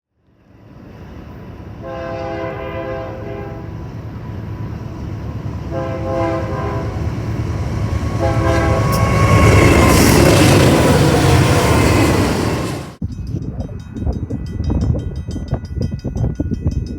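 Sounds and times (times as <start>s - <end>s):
diesel locomotive rumble: 0.5s - 16.9s
train wheel noise: 0.5s - 16.9s
locomotive horn blasts: 1.8s - 3.8s, 5.7s - 7.3s, 8.1s - 9.6s.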